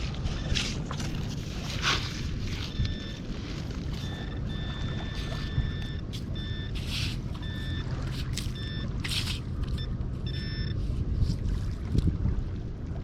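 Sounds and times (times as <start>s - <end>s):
wind rumble on microphone: 0.0s - 13.0s
metal detector beep: 2.5s - 10.8s
hissy scrapes: 6.2s - 7.4s, 8.1s - 9.5s.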